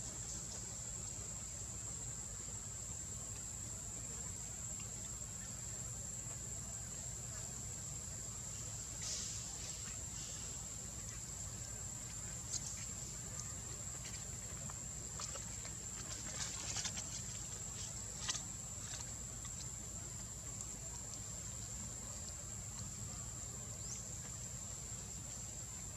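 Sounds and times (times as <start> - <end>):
faint clicks and rustles: 12.0 - 23.2.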